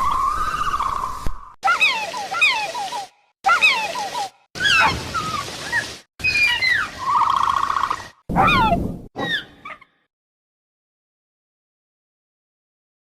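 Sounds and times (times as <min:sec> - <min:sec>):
creature chirps and squeals: 0:00.0 - 0:09.8.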